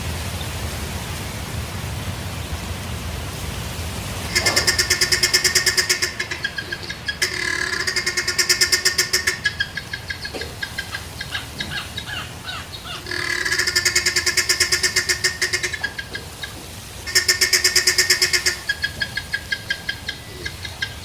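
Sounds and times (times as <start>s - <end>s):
rapid pulsed animal call: 4.3s - 21.0s
short falling bird chirps: 4.3s - 21.0s.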